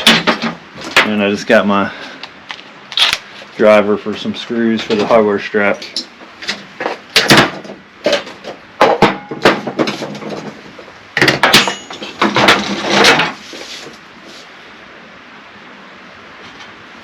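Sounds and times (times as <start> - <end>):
tools and parts clattering: 0.0 - 1.2, 4.7 - 14.0
low background noise: 0.0 - 17.0.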